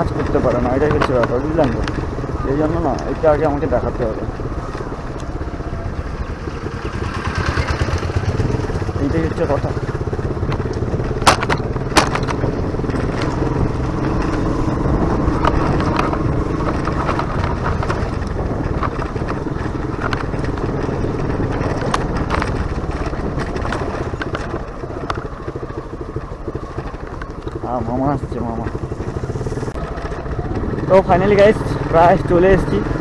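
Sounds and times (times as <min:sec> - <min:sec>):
sharp clicks: 0:00.0 - 0:05.4
motorcycle engine running: 0:00.0 - 0:33.0.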